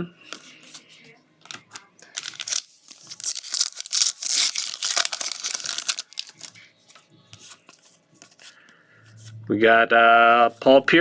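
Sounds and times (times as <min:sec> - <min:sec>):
foil wrapper crinkling: 0:01.5 - 0:06.6.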